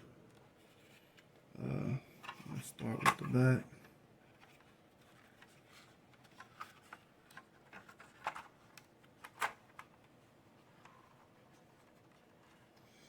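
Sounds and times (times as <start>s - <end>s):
plastic parts clicking: 5.3s - 10.0s.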